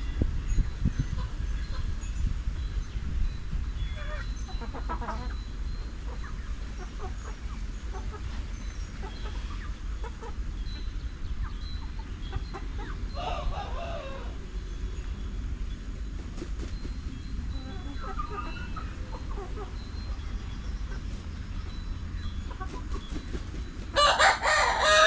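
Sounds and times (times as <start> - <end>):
steady low rumble: 0.0 - 24.0
chickens clucking: 3.8 - 14.5, 16.2 - 25.0.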